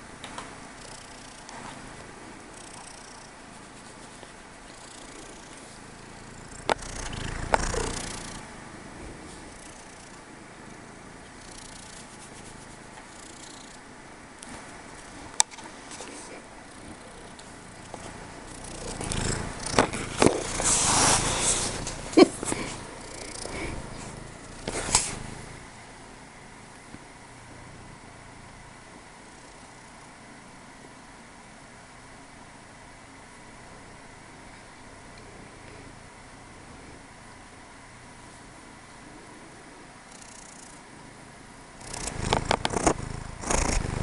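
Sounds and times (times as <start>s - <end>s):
kitten hissing snuffle: 0.7s - 8.6s, 9.2s - 13.9s, 15.9s - 25.8s, 41.8s - 44.0s
kitten sneezing: 24.7s - 25.2s.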